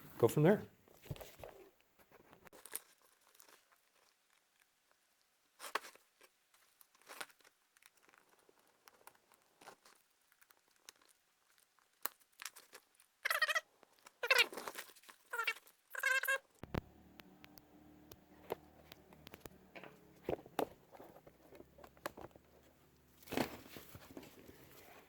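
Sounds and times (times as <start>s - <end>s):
plastic wire loom crackling: 15.9s - 23.4s.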